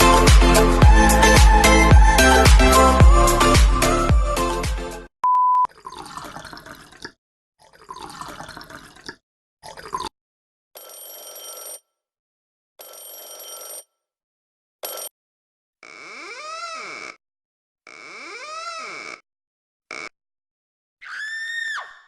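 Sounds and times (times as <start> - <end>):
dance music: 0.0 - 5.1
short electronic beep: 5.2 - 5.7
water splashing: 5.7 - 10.0
telephone ringing: 10.8 - 11.8, 12.8 - 13.9.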